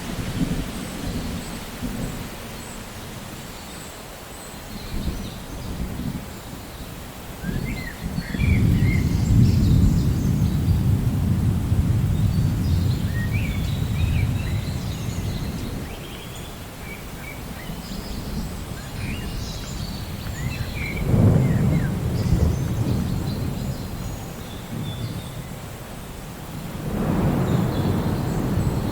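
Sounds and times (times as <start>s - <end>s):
thunder rumbling: 7.4s - 16.0s, 17.5s - 28.9s
birds chirping: 12.2s - 25.6s.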